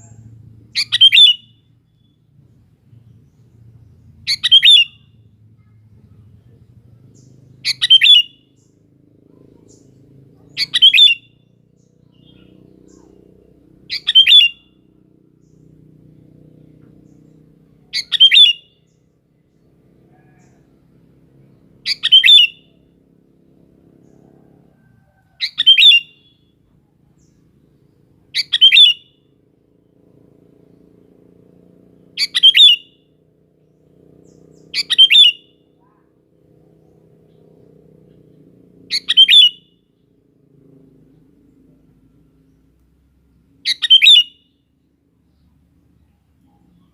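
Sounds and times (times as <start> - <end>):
bulbul calling: 0.0 - 2.2, 3.0 - 13.2, 13.8 - 15.7, 16.8 - 19.0, 21.7 - 22.8, 24.0 - 26.5, 28.3 - 29.2, 32.0 - 40.2, 40.8 - 44.7.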